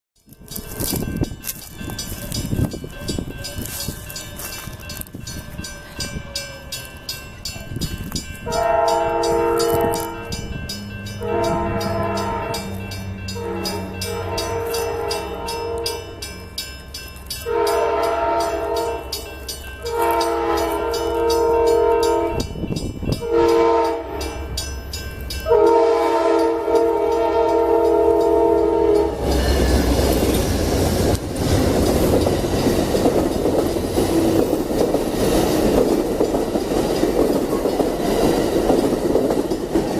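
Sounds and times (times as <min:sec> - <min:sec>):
train rumbling and rattling past: 0:00.2 - 0:39.9
train horn blasts: 0:08.5 - 0:10.4, 0:11.2 - 0:16.2, 0:17.4 - 0:19.2, 0:19.8 - 0:22.5, 0:23.2 - 0:24.5, 0:25.4 - 0:30.0.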